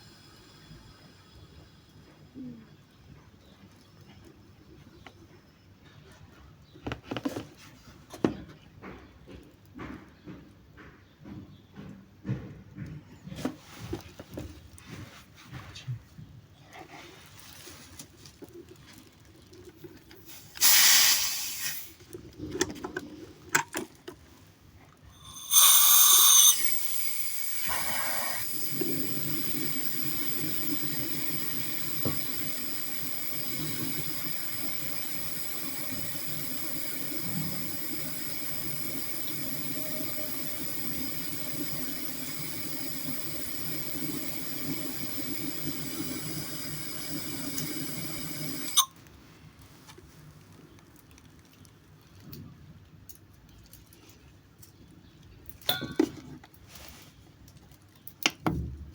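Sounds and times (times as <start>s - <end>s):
gas hissing through a hose: 0.0s - 2.0s, 20.3s - 22.0s, 25.2s - 48.9s
loud gas blasts: 20.6s - 22.0s, 25.2s - 48.9s.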